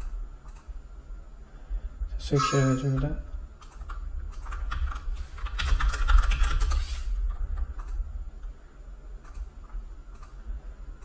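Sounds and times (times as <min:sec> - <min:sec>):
steady low hum: 0:00.0 - 0:11.0
keyboard typing: 0:02.4 - 0:08.5.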